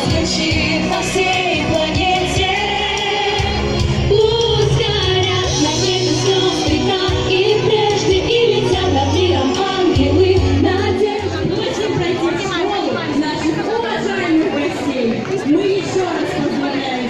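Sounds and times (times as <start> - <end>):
backing track music: 0.0 - 12.3
women singing pop song: 0.0 - 14.1.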